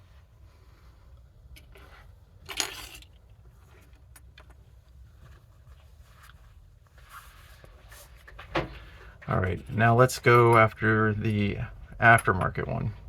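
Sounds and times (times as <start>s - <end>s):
small parts rattling: 1.6s - 3.4s
soft rustle: 3.4s - 9.0s.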